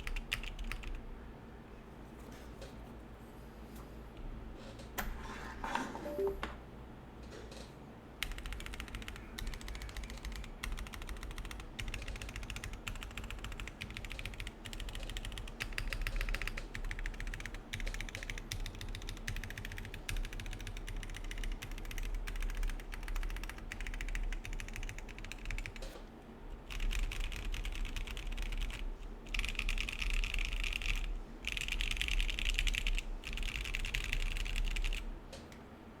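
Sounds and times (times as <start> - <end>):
fast typing on mechanical keyboard: 0.0 - 1.0, 8.2 - 25.9, 26.6 - 35.1.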